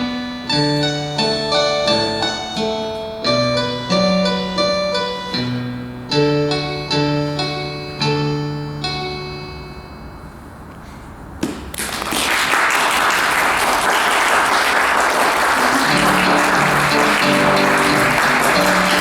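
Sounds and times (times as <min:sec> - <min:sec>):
instrumental chord: 0:00.0 - 0:10.6, 0:15.7 - 0:19.0
instrumental notes: 0:00.0 - 0:10.7, 0:15.6 - 0:19.0
audience applause: 0:11.8 - 0:19.0.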